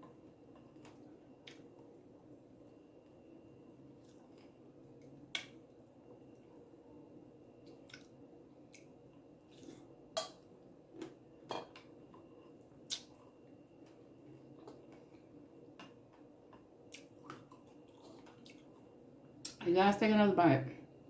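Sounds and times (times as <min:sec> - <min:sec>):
soft wet squishing food: 0:00.0 - 0:19.6.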